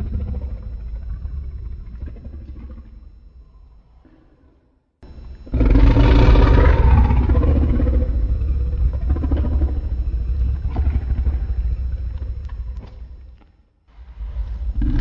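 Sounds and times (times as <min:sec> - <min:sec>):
deep rumbling blast with growl: 0:05.2 - 0:13.2, 0:14.0 - 0:15.0.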